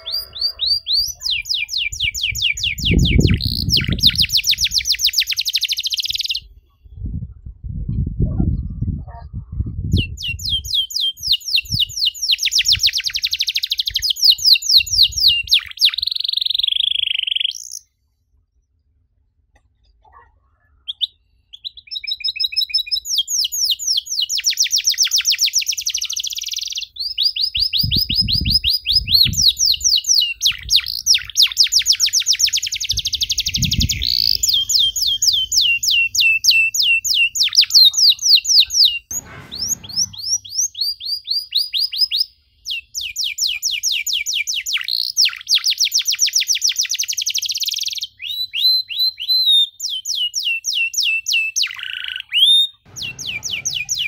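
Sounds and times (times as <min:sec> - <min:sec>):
canary singing trills: 0:00.0 - 0:06.6
low thumps: 0:39.1 - 0:40.4, 0:52.9 - 0:54.0.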